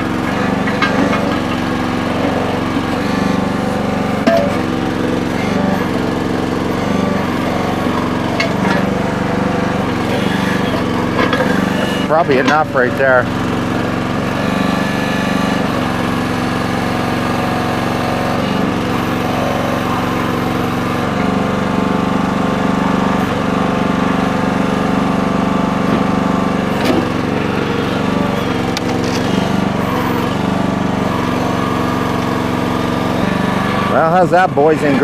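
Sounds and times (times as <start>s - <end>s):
small gas engine running: 0.0s - 35.0s.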